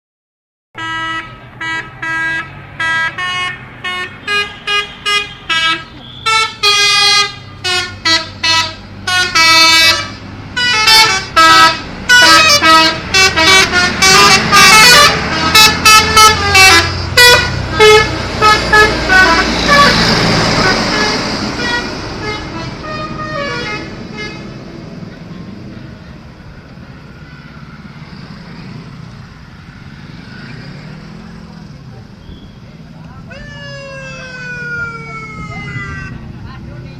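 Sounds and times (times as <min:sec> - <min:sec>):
musical multi-tone air horns: 0:00.8 - 0:24.5
bus engine: 0:00.8 - 0:36.9
road noise: 0:00.8 - 0:36.9.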